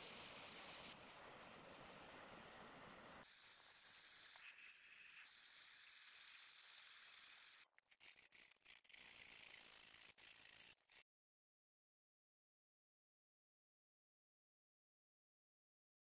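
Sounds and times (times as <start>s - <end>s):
faint steady hiss: 0.0s - 3.2s.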